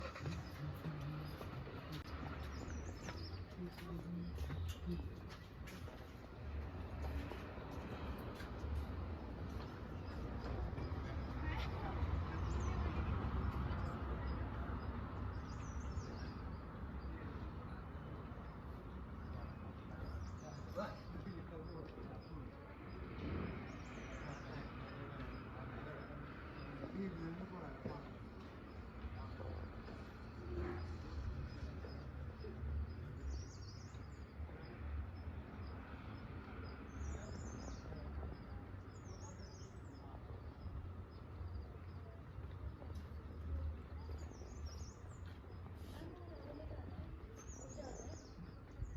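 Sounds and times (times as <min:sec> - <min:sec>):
birds chirping: 0:00.0 - 0:48.9.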